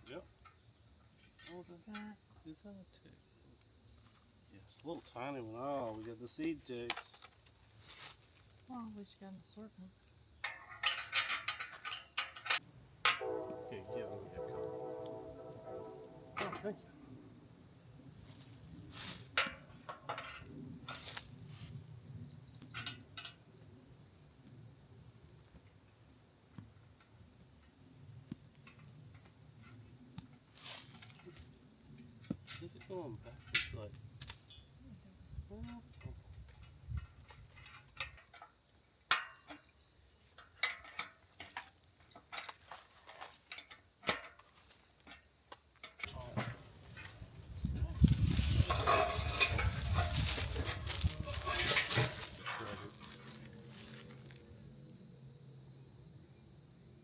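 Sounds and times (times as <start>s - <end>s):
high insect drone: 0.0s - 57.0s
clicks and knocks on metal: 10.4s - 13.2s, 40.5s - 45.2s, 48.6s - 52.8s
rustles and clicks of hardware: 45.8s - 54.4s.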